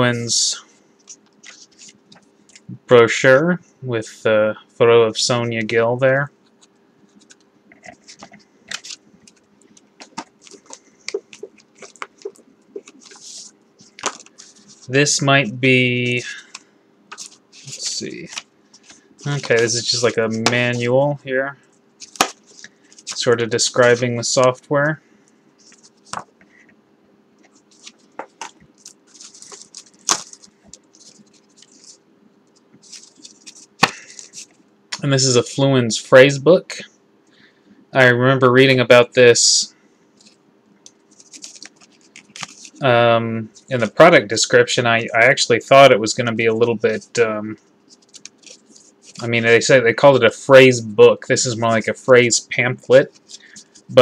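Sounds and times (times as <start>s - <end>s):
faint steady hum: 0.0s - 54.0s
paper and cardboard rustling: 7.2s - 15.3s, 16.1s - 20.9s, 22.0s - 24.4s, 27.5s - 32.0s, 32.8s - 34.6s, 41.1s - 42.8s, 47.9s - 49.7s.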